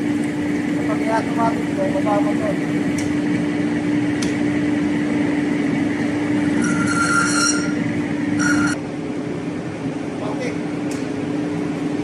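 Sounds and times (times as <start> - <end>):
lathe drive humming: 0.0 - 8.8
cutting tool squealing: 6.4 - 8.8.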